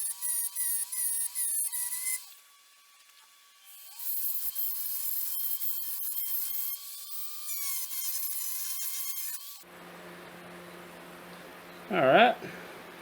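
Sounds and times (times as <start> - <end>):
rotary carving tool whining: 0.0 - 9.7.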